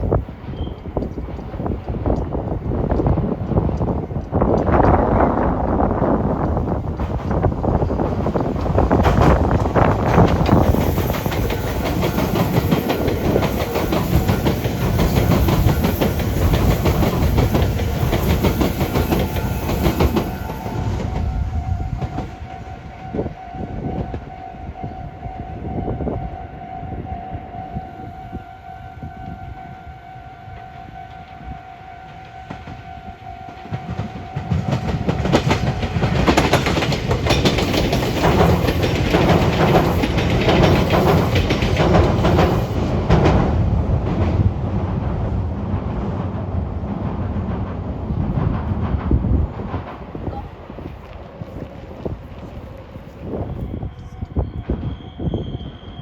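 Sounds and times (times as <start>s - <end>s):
train wheels rumbling and clattering: 0.0s - 24.4s, 31.1s - 55.8s
steady train whine: 0.0s - 56.0s
wheel clacks: 33.8s - 43.6s.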